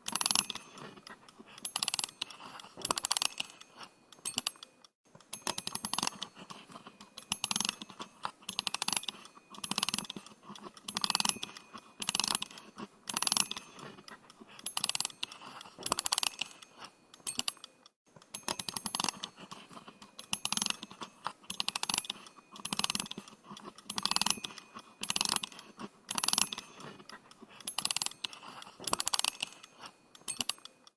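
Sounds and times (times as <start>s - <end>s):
clockwork ratchet clicking: 0.0s - 30.9s.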